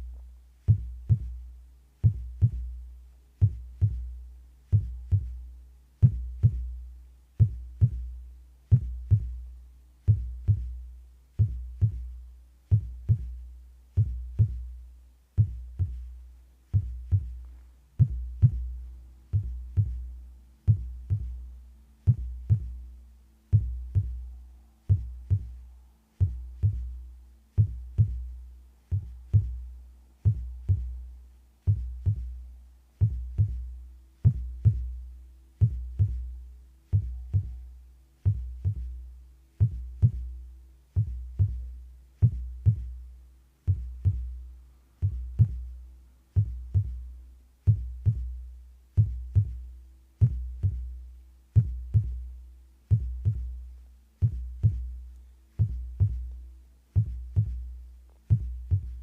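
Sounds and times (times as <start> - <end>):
slow heartbeat thumps: 0.0 - 59.0.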